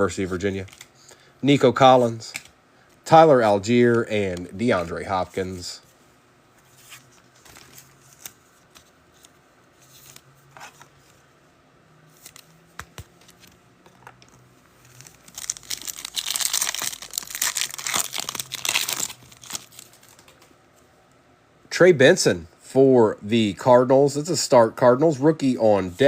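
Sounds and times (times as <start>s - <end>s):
foil wrapper tearing and crinkling: 15.2s - 20.1s.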